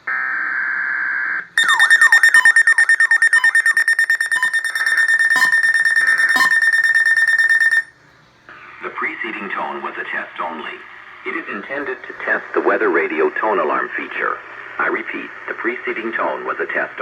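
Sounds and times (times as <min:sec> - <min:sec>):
buzzy data burst: 0:01.6 - 0:07.9
high electronic alarm tone: 0:01.6 - 0:07.9.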